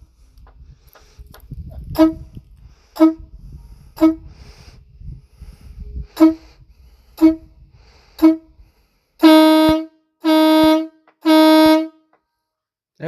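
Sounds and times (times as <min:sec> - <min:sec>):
van air horn blasts: 0:01.9 - 0:02.4, 0:03.0 - 0:04.4, 0:06.0 - 0:12.2.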